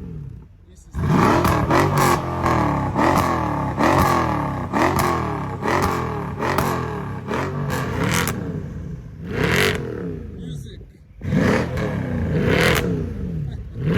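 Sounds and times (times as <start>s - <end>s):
car engine revving: 0.0s - 13.9s
exhaust pops: 1.0s - 8.5s.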